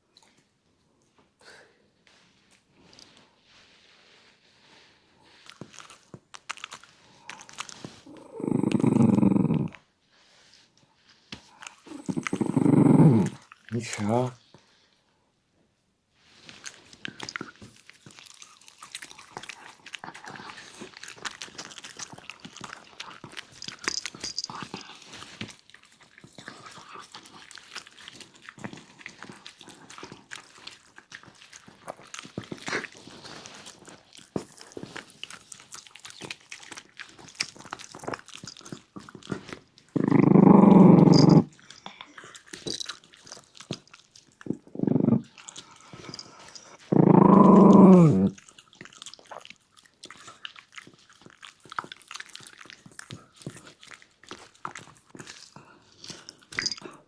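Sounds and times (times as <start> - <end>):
puppy chewing food crunches: 5.2 - 9.8, 11.3 - 14.6, 16.3 - 57.0
puppy growl: 7.4 - 9.8, 11.8 - 14.2, 39.9 - 42.8, 44.4 - 48.4.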